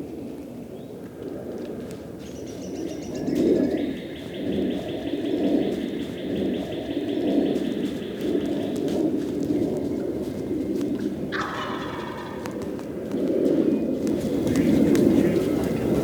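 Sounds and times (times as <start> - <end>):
bird cooing: 11.4 - 16.0.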